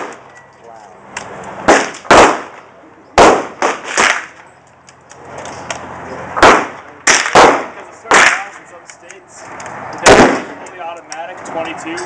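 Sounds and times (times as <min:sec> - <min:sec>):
gunshots: 0:00.0 - 0:00.2, 0:01.6 - 0:04.4, 0:06.4 - 0:08.6, 0:10.0 - 0:10.6.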